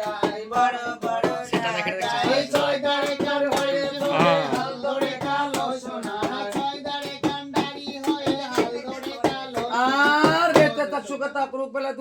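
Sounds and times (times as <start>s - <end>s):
person singing: 1.4s - 2.6s, 4.0s - 4.7s.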